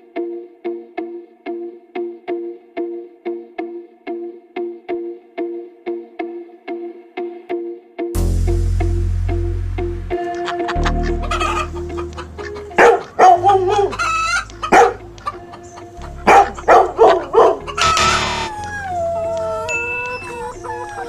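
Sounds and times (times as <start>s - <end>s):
rooster crowing: 10.4s - 12.1s, 12.8s - 21.0s
chickens clucking: 10.4s - 21.0s.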